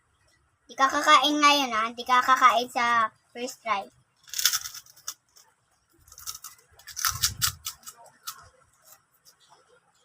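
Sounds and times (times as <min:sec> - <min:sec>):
food crackling while eaten: 0:04.2 - 0:09.7.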